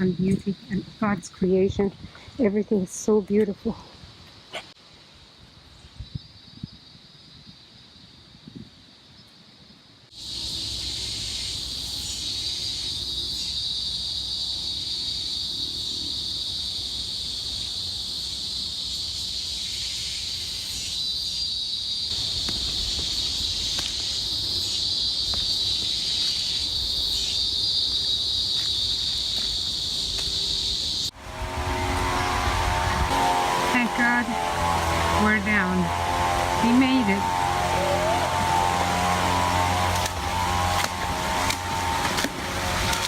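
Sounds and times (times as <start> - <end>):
insect chorus drone: 0.0 - 43.0.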